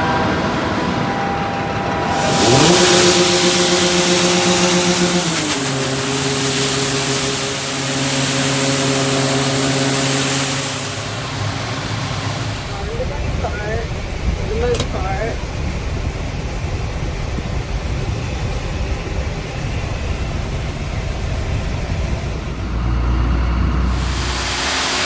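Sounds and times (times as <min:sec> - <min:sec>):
tractor engine revving: 0:00.0 - 0:18.0, 0:19.6 - 0:25.0
loud steady hiss: 0:01.9 - 0:15.8, 0:23.9 - 0:25.0.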